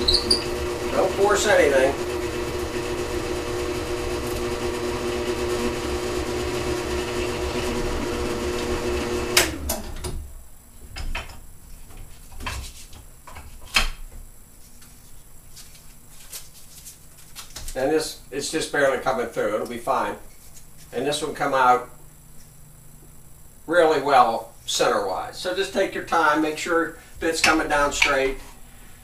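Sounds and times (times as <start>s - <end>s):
electric drill boring through wood: 0.0s - 9.9s.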